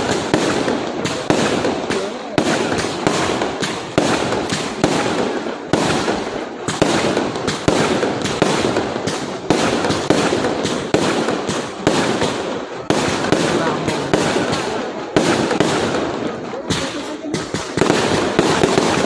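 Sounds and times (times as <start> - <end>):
firework bangs: 0.0 - 19.0.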